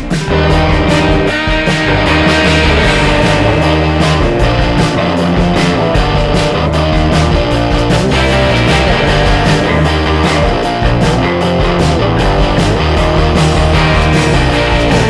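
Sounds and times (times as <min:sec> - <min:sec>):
rock music with guitar: 0:00.0 - 0:15.0.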